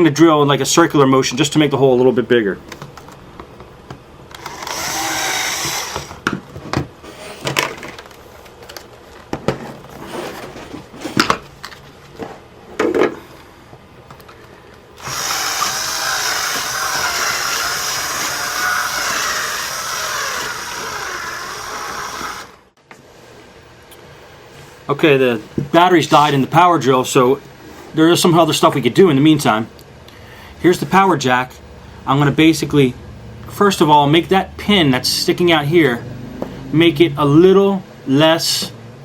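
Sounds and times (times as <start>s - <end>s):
power drill drilling plastic: 4.3s - 6.2s, 15.0s - 22.7s.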